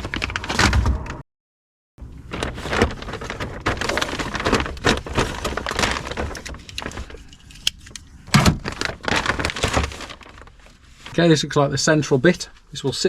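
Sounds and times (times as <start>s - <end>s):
plastic clicks and rustling: 2.3s - 10.5s.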